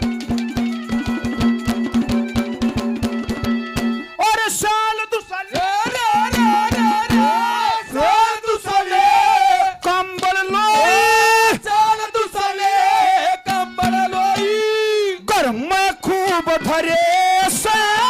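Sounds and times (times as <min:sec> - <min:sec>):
drum strokes: 0:00.0 - 0:04.2, 0:05.5 - 0:07.8, 0:13.5 - 0:14.6
folk melody with held notes: 0:00.0 - 0:18.0.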